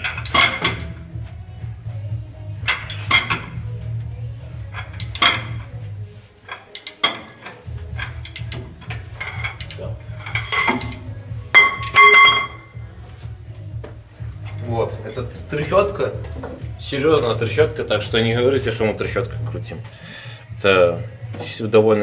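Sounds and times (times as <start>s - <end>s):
metal tools clinking: 0.0s - 1.0s, 2.7s - 3.6s, 4.7s - 5.8s, 6.5s - 12.7s
ringing metal clank: 10.3s - 12.8s.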